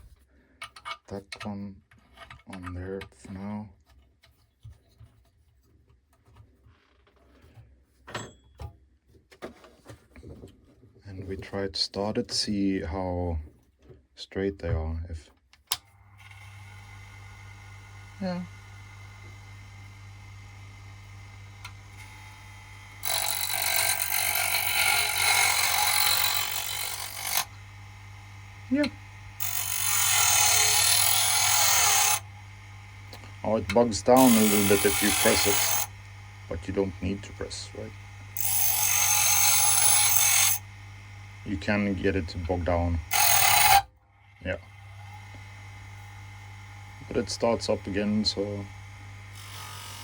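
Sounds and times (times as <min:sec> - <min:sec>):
bench grinder grinding: 0:16.0 - 0:50.0.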